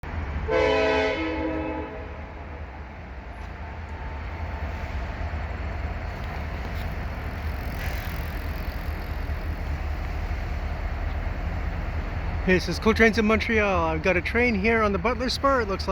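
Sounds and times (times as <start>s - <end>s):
freight train rumbling past: 0.0s - 15.9s
locomotive horn chord: 0.4s - 2.4s.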